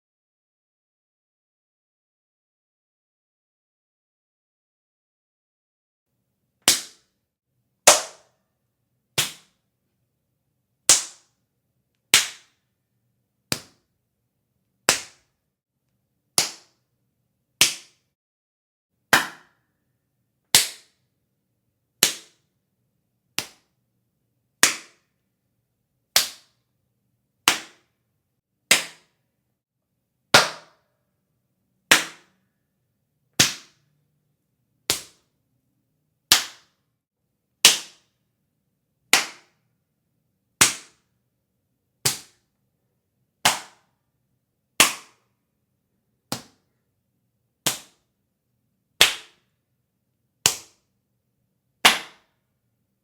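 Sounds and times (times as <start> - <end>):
hand slaps on bare skin: 7.9 - 8.3, 9.2 - 9.6, 10.9 - 11.3, 12.1 - 12.6, 13.5 - 13.8, 14.9 - 15.3, 16.4 - 16.7, 17.6 - 18.0, 23.4 - 23.7, 24.6 - 25.0, 26.2 - 26.5, 27.5 - 27.9, 28.7 - 29.1, 31.9 - 32.3, 34.9 - 35.2, 36.3 - 36.7, 39.1 - 39.5, 40.6 - 41.0, 43.4 - 43.8, 44.8 - 45.2, 47.7 - 48.0, 49.0 - 49.4, 51.8 - 52.3.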